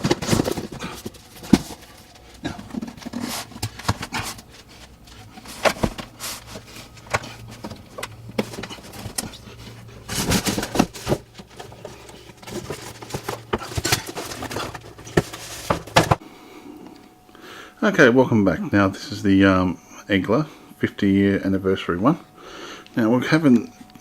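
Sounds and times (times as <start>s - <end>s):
knocks and scrapes of unpacking: 0.0s - 16.2s
steady low hum: 0.0s - 24.0s.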